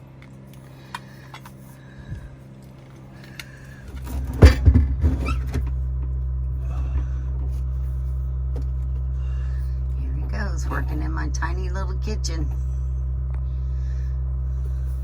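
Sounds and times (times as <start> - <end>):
low machine hum: 0.0 - 15.0
knocks and clatter: 3.9 - 6.1.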